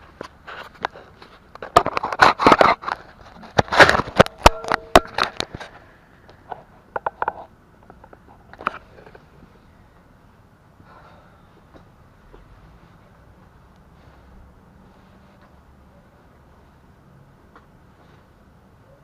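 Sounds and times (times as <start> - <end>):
batteries knocking and scraping: 0.2 - 5.8, 6.4 - 9.2.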